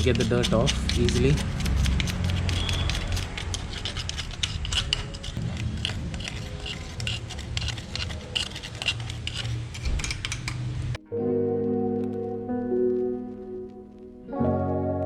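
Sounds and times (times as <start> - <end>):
screwdriver scraping metal sprocket: 0.0 - 10.7.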